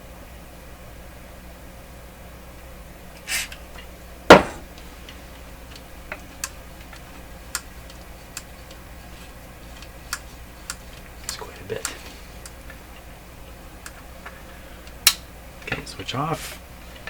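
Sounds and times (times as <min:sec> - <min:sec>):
loud knock: 0:04.3 - 0:04.7
small clicks and taps: 0:04.8 - 0:13.1.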